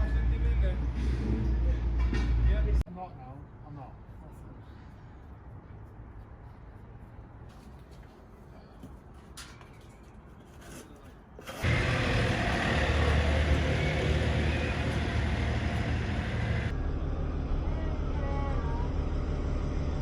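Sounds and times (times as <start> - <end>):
machine humming and hissing: 11.6 - 16.7.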